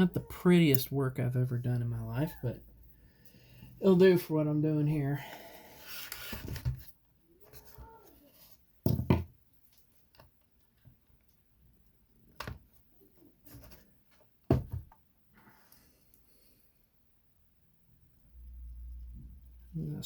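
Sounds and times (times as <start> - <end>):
tools knocking on workbench: 8.9 - 9.3, 14.5 - 14.9.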